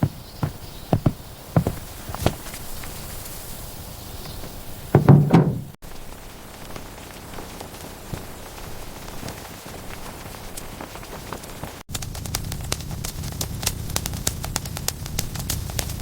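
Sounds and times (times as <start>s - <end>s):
knocks and thuds: 0.0s - 2.5s, 4.4s - 5.8s
faint steady hiss: 0.0s - 16.0s.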